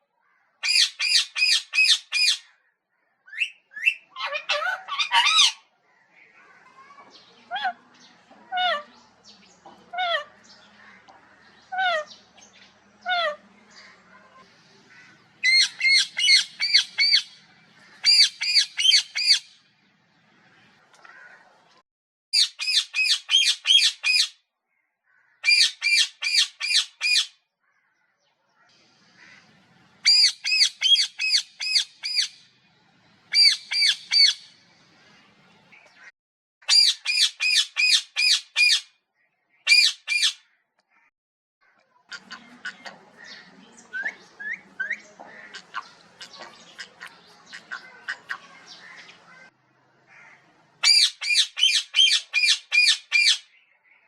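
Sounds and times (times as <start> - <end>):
parrot squawking: 0.6 - 2.5, 3.4 - 5.6, 9.9 - 10.4, 11.7 - 12.2, 13.0 - 13.4, 15.4 - 17.4, 18.0 - 19.5, 22.4 - 24.3, 25.4 - 27.3, 30.0 - 32.4, 33.3 - 34.5, 36.7 - 38.9, 39.7 - 40.4, 42.1 - 49.5, 50.2 - 53.5.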